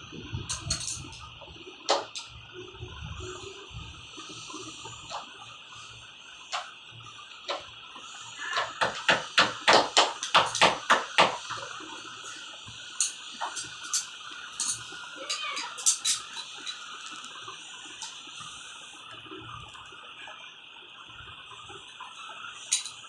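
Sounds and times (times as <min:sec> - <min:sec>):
steady hiss: 0:00.0 - 0:23.0
sharp knocks of hand tool: 0:08.6 - 0:11.5.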